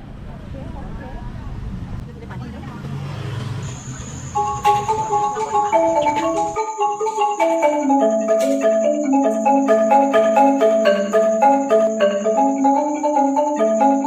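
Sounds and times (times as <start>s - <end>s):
tuned mallet percussion music: 4.4s - 14.0s.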